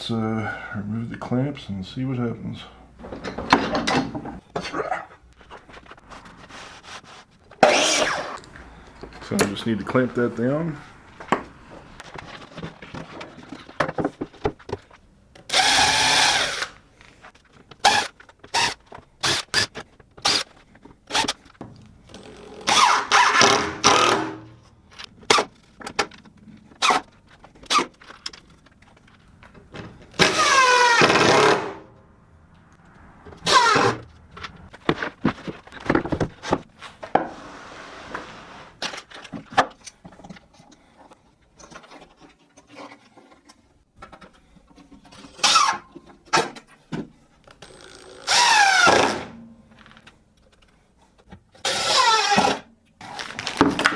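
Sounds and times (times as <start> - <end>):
clicks and knocks of clamps and wood: 7.6 - 12.3, 38.8 - 47.9.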